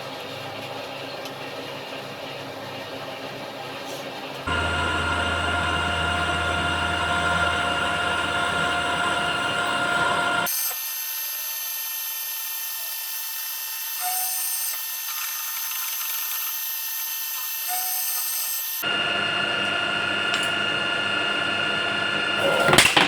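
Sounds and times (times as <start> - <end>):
power tool grinding: 4.5 - 10.6
power drill whining on steel: 4.5 - 23.0.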